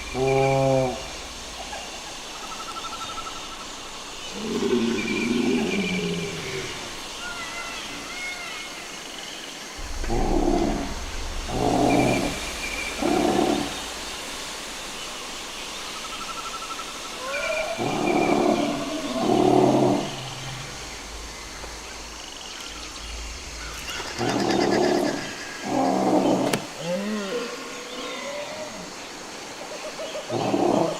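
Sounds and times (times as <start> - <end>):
low rumble: 0.0 - 2.5, 9.8 - 16.4, 17.7 - 25.8
birds chirping and trilling: 0.0 - 30.9
dinosaur roaring: 0.1 - 1.2, 9.8 - 14.1, 17.3 - 21.3.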